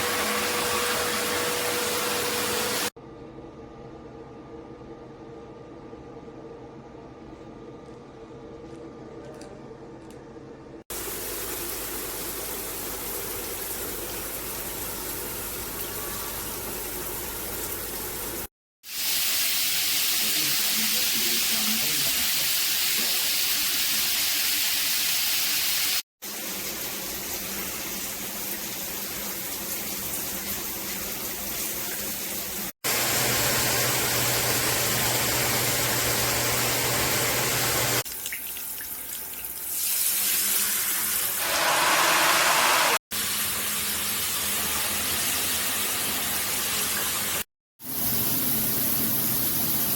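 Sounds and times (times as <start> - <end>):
water spraying from shower head: 17.6 - 38.0, 39.7 - 47.2, 47.8 - 49.9.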